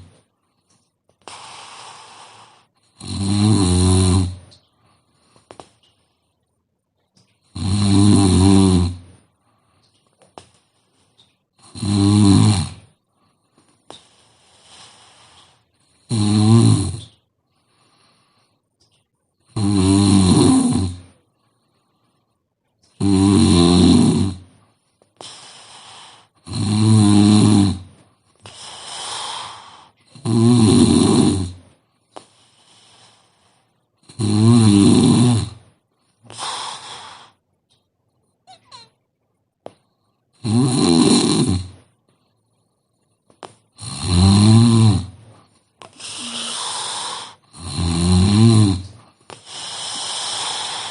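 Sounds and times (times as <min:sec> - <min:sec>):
woman snoring: 0:01.3 - 0:04.4, 0:07.5 - 0:09.1, 0:11.6 - 0:12.9, 0:14.4 - 0:17.0, 0:19.6 - 0:21.1, 0:23.0 - 0:24.5, 0:25.2 - 0:31.6, 0:34.1 - 0:35.7, 0:40.4 - 0:41.8, 0:43.8 - 0:45.2, 0:45.8 - 0:50.9
faint breaths: 0:04.3 - 0:07.5, 0:08.9 - 0:11.6, 0:12.8 - 0:16.1, 0:17.4 - 0:19.5, 0:21.0 - 0:23.0, 0:24.4 - 0:26.4, 0:27.8 - 0:30.2, 0:31.5 - 0:34.0, 0:35.5 - 0:38.9, 0:41.7 - 0:43.8, 0:45.1 - 0:47.6, 0:48.8 - 0:50.9.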